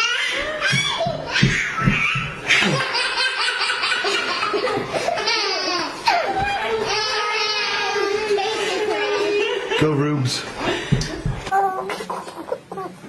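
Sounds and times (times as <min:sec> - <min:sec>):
baby laughing: 0:00.0 - 0:09.8, 0:11.4 - 0:13.0
other laughter: 0:02.4 - 0:06.9.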